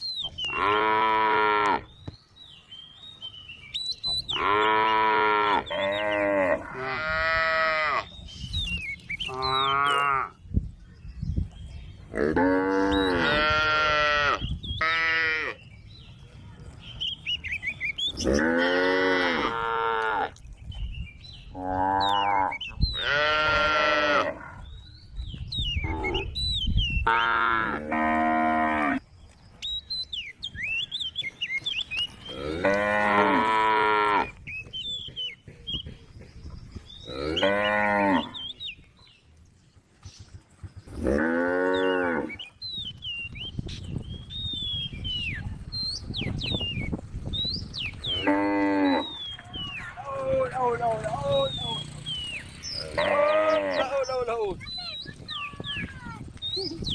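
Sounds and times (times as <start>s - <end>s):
cows mooing: 0.5s - 1.9s, 4.3s - 8.2s, 9.3s - 10.4s, 12.1s - 15.6s, 18.2s - 20.4s, 21.5s - 24.7s, 27.1s - 29.0s, 32.3s - 34.4s, 37.0s - 38.5s, 40.9s - 42.4s, 48.1s - 49.2s, 50.0s - 54.2s.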